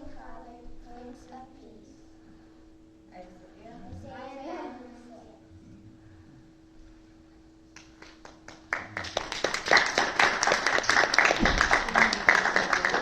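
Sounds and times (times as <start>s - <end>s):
audience applause: 8.0s - 13.0s.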